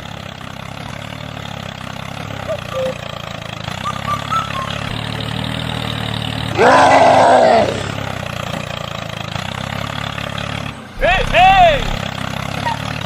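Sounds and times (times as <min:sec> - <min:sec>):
tractor motor droning: 0:00.0 - 0:13.0
rough roaring sound: 0:06.5 - 0:08.0.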